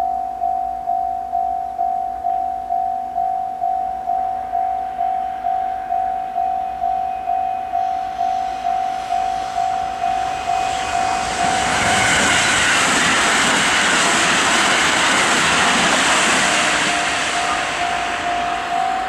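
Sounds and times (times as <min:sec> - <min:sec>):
level crossing alarm clanging: 0:00.0 - 0:19.0
electric train rushing past: 0:04.4 - 0:19.0.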